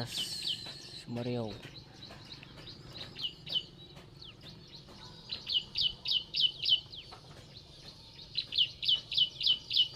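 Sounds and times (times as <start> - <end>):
bird chirping: 0.0 - 9.9.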